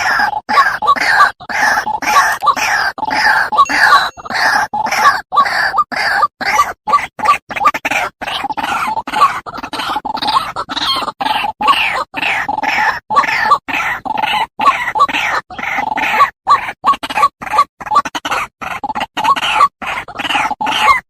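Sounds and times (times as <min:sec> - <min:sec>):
bird croaking calls: 0:00.0 - 0:06.6.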